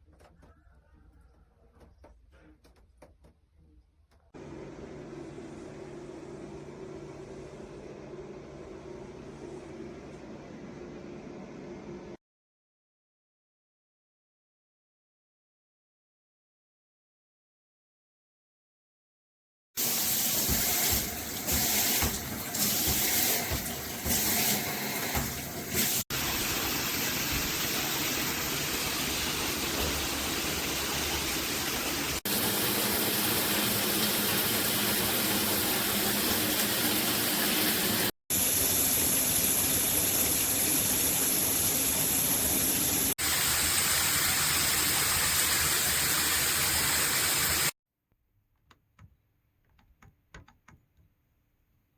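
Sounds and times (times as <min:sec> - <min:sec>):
water spraying from shower head: 0:19.8 - 0:47.8.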